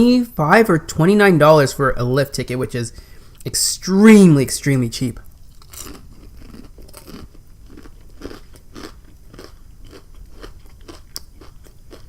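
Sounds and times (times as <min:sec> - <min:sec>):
chewing crunchy fried food: 0:05.3 - 0:12.0.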